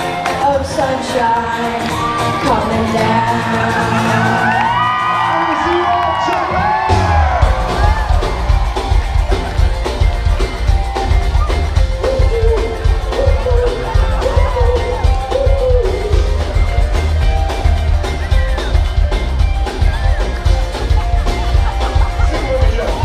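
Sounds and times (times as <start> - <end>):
bass-heavy drum beat: 1.8 - 23.0
wavering melody line: 7.6 - 23.0.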